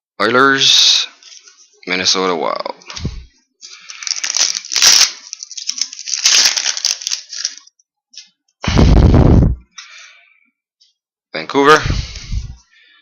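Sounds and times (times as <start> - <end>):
foil wrapper crinkling and tearing: 3.6 - 7.7.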